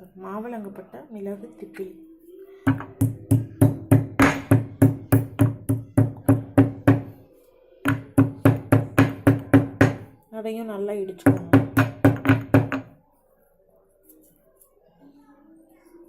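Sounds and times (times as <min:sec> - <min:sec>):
pestle pounding in a mortar: 0:02.7 - 0:07.1, 0:07.9 - 0:10.1, 0:11.3 - 0:12.9.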